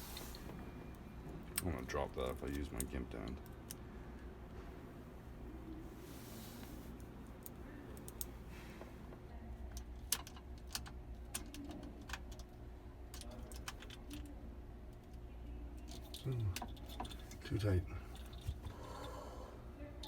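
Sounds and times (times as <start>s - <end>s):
steady low hum: 0.0s - 20.0s
small parts clicking and tapping: 7.0s - 8.3s, 9.6s - 15.2s, 15.8s - 18.7s.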